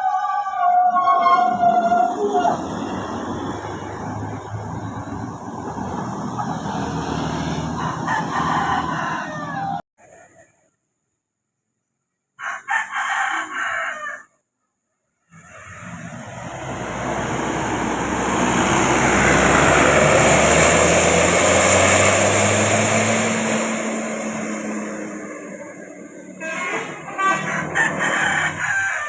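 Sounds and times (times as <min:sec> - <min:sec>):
bus passing: 0:00.0 - 0:09.8, 0:15.3 - 0:29.0
multi-tone horn burst: 0:21.4 - 0:28.6.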